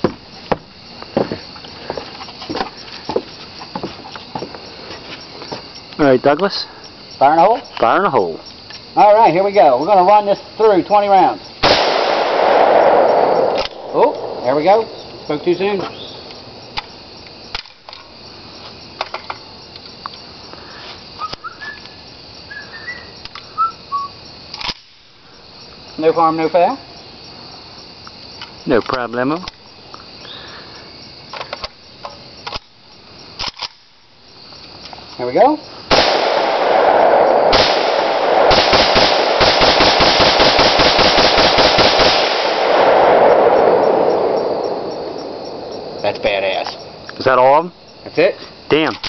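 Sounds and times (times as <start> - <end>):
outdoor hiss: 0.0 - 49.0
rifle firing rapidly: 11.6 - 14.4, 35.9 - 43.4
sharp clicks: 12.4 - 15.2
bird singing whistled notes: 15.9 - 16.3, 21.2 - 24.2.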